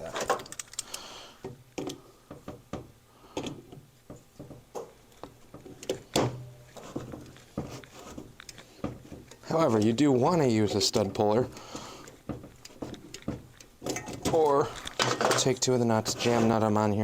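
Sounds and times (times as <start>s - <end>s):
locking pliers clicking on metal: 0.2s - 1.1s.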